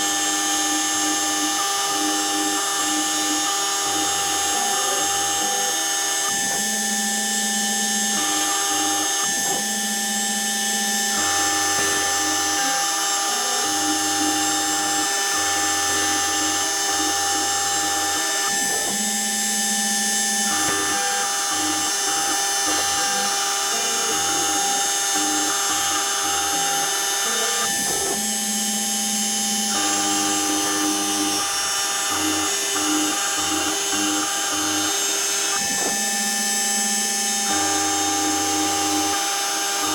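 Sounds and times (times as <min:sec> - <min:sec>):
high spindle whine: 0:00.0 - 0:39.9
low motor tones: 0:00.0 - 0:39.9.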